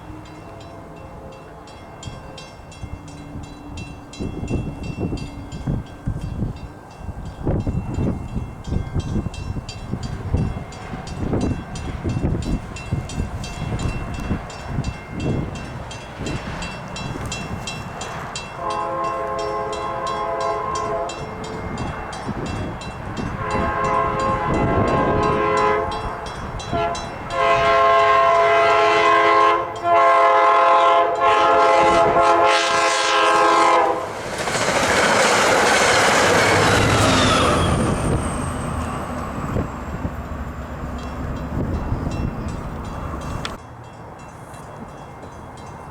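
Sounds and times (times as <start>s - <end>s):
train rushing past: 0.0s - 45.9s
wind buffeting microphone: 2.0s - 19.2s, 20.0s - 28.7s, 31.5s - 43.6s
train air horn blasts: 18.6s - 21.8s, 23.2s - 34.2s.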